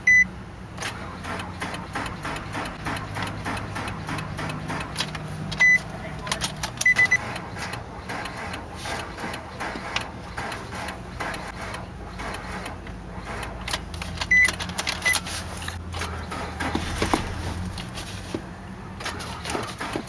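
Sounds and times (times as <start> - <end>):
short high beeps: 0.0 - 0.3, 5.6 - 5.8
car engine cranking without starting: 0.0 - 20.0.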